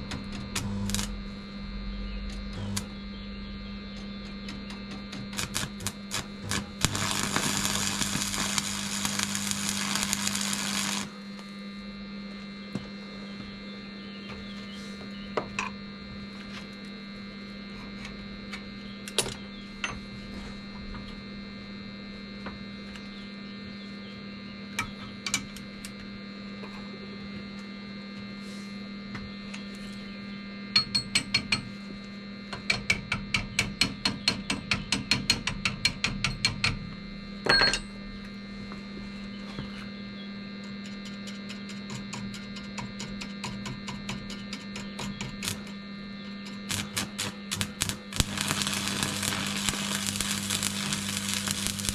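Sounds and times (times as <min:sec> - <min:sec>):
electrical hum: 0:00.0 - 0:51.9
hissing noise: 0:05.4 - 0:11.1, 0:46.7 - 0:51.9.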